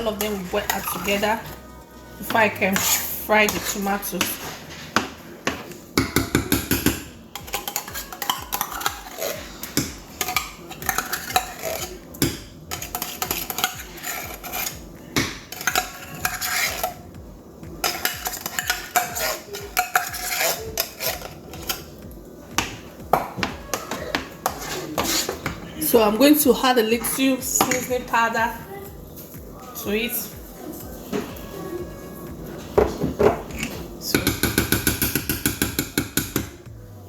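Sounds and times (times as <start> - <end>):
metal spoon scraping a pot: 0.0 - 1.6, 2.2 - 5.6, 7.3 - 14.8, 15.4 - 17.0, 17.8 - 22.0, 23.8 - 25.6.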